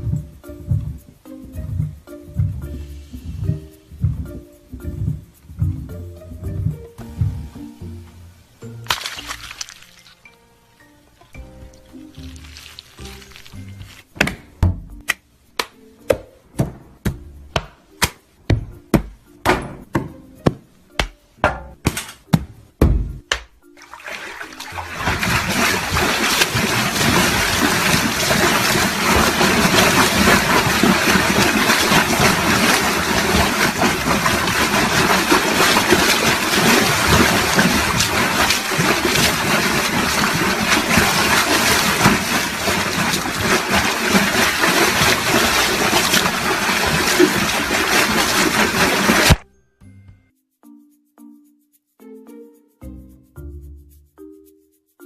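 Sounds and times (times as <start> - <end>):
loud crackling splashing noise: 8.8 - 10.3, 11.8 - 14.1, 23.9 - 49.4.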